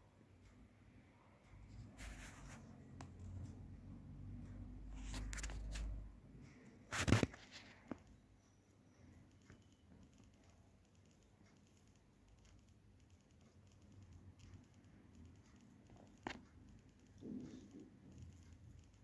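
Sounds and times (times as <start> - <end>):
ceiling fan hum: 0.0 - 8.4
light ticking: 8.1 - 19.0.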